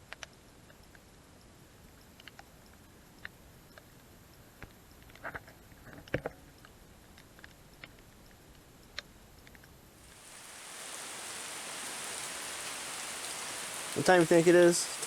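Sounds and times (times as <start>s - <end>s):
rain falling: 10.0s - 15.0s.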